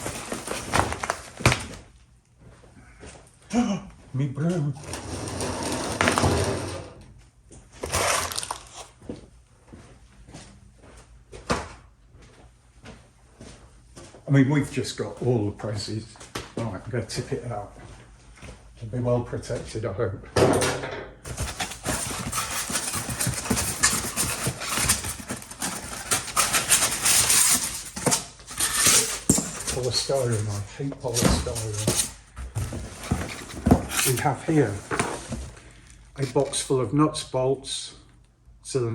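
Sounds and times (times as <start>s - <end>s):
polystyrene pieces rattling: 0.0s - 1.7s, 7.8s - 8.9s, 21.3s - 35.5s
rustling scrape: 21.3s - 36.4s.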